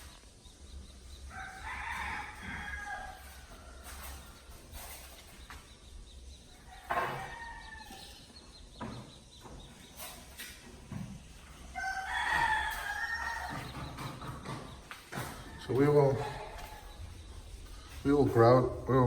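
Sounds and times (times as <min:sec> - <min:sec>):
rooster crowing: 0:01.2 - 0:04.7, 0:06.5 - 0:08.3, 0:11.6 - 0:14.2.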